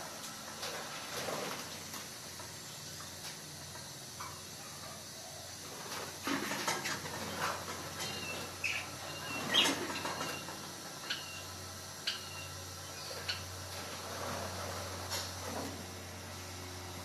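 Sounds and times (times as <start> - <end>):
budgerigars chirping: 8.0 - 13.5.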